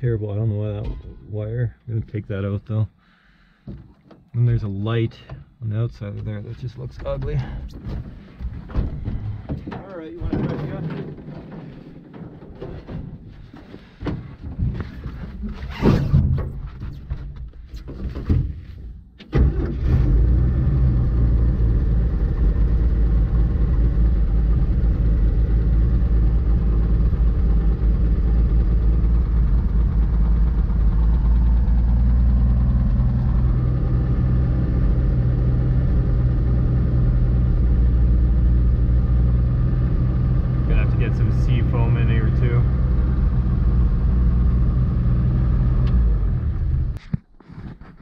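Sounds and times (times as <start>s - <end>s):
truck engine starting and running: 0.0s - 47.1s.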